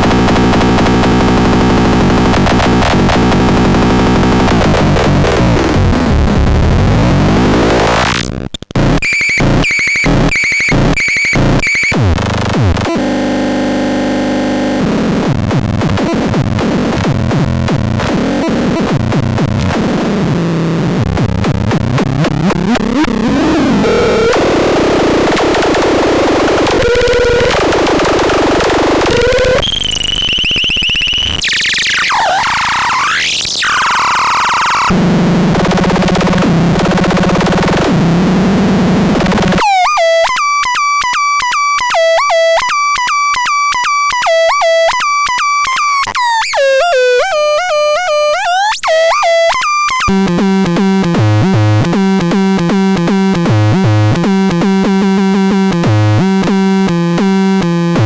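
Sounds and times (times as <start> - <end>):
synth bass line and melody: 50.1 - 58.0.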